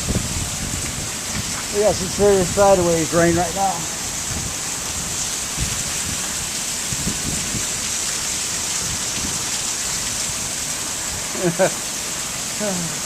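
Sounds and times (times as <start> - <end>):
heavy rain pouring: 0.0 - 13.0.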